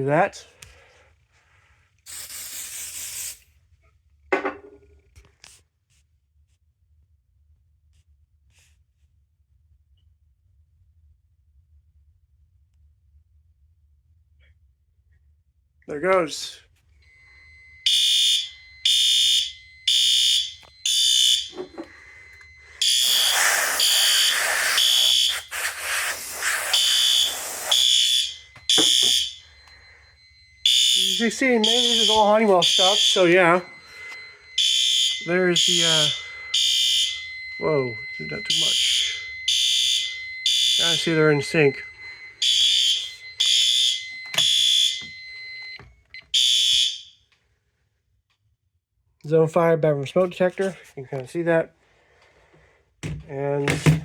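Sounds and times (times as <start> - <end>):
fire alarm horn blasts: 15.9 - 47.3
thin high beep: 17.1 - 45.8.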